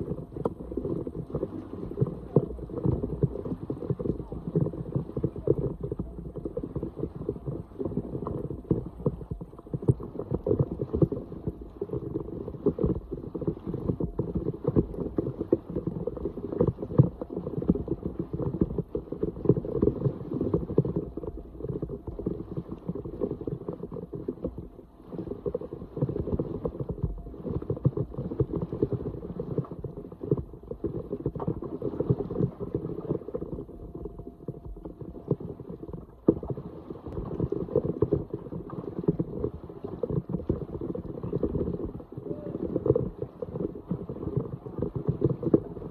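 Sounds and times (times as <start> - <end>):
water sloshing and gurgling: 0.0 - 45.9.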